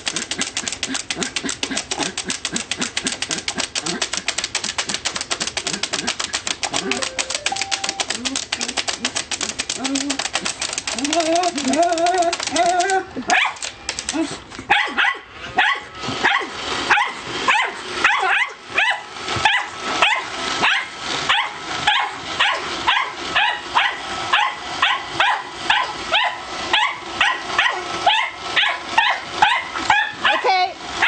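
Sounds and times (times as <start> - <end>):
dog barking in high yips: 12.6 - 13.6, 14.7 - 30.6.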